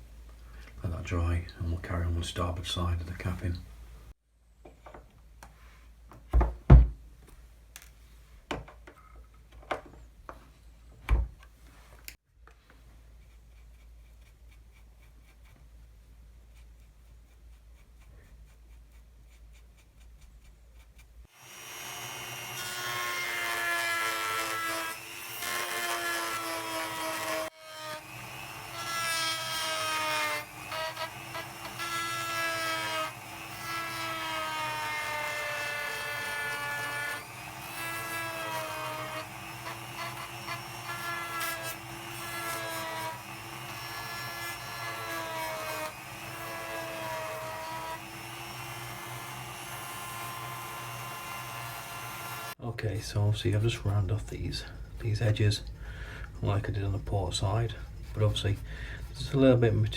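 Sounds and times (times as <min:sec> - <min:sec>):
rotary tool sanding wood: 0:13.0 - 0:15.8, 0:16.5 - 0:52.6.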